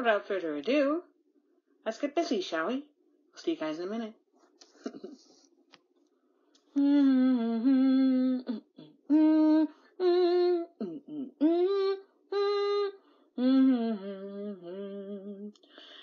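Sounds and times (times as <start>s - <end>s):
woman singing wordless notes: 6.8s - 15.6s.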